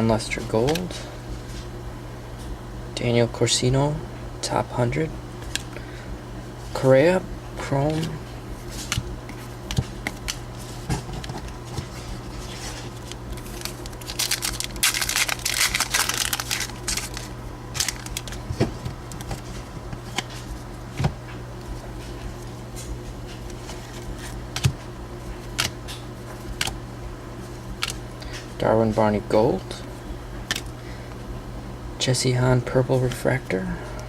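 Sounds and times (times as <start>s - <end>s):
low steady hum: 0.0s - 34.0s
foil wrapper crinkling and tearing: 12.3s - 20.4s.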